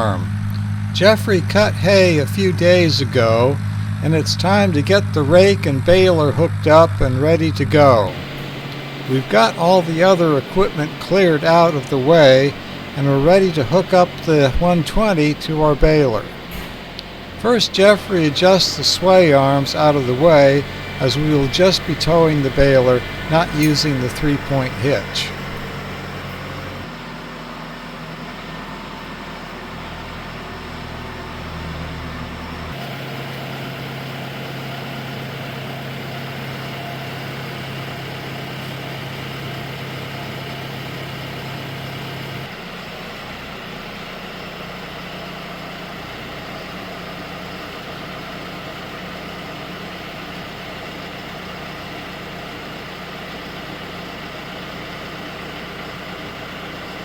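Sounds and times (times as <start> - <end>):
tractor diesel engine running: 0.0 - 57.0.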